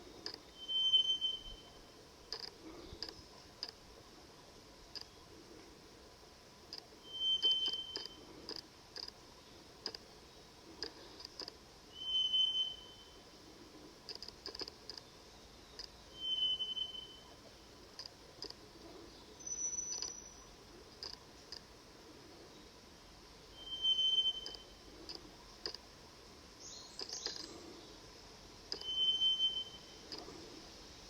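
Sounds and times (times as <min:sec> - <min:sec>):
faint clicks: 0:00.2 - 0:00.5, 0:02.3 - 0:04.1, 0:04.9 - 0:05.2, 0:06.7 - 0:09.2, 0:09.8 - 0:11.6, 0:14.0 - 0:15.1, 0:15.7 - 0:16.0, 0:17.4 - 0:18.9, 0:19.9 - 0:20.2, 0:20.8 - 0:21.8, 0:24.4 - 0:25.9, 0:26.9 - 0:27.7, 0:28.7 - 0:28.9, 0:30.0 - 0:30.4
whistled note: 0:23.6 - 0:24.6, 0:28.8 - 0:30.0.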